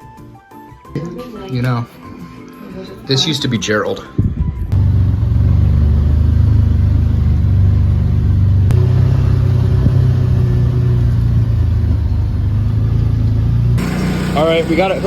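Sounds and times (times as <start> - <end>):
portable generator engine running: 4.7 - 15.0.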